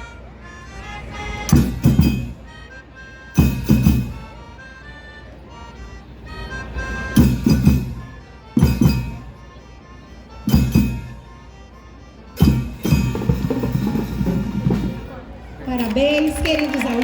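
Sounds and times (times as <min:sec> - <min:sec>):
marching band held notes: 0:00.0 - 0:17.0
bass drums and crash cymbals: 0:01.5 - 0:02.5, 0:03.4 - 0:04.2, 0:07.2 - 0:09.3, 0:10.5 - 0:11.2, 0:12.4 - 0:15.1.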